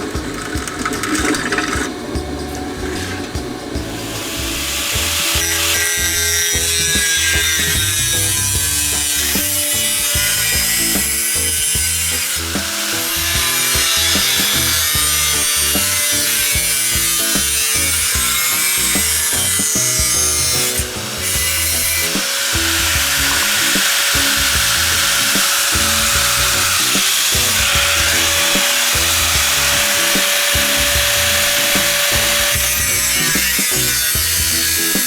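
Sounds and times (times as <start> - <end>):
background music: 0.0 - 35.0
power tool whining on wood: 0.5 - 35.0.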